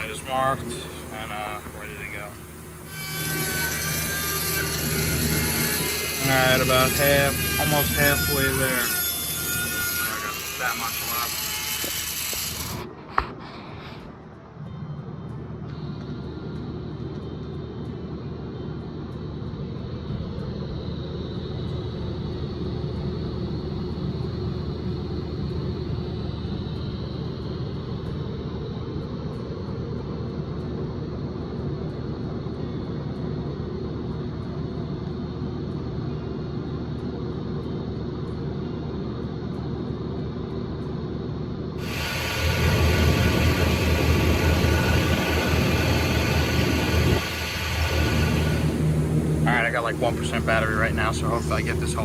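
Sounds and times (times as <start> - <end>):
welding arc: 0.0 - 13.0, 41.8 - 52.0.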